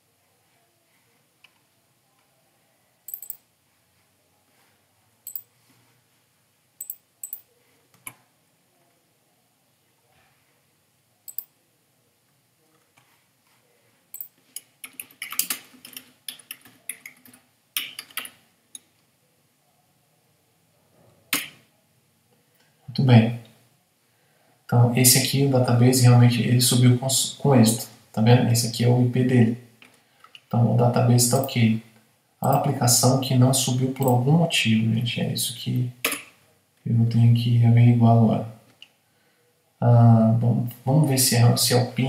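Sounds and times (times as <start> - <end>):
computer keyboard typing: 3.1 - 3.4, 6.8 - 7.4, 11.3 - 11.5, 14.2 - 18.4.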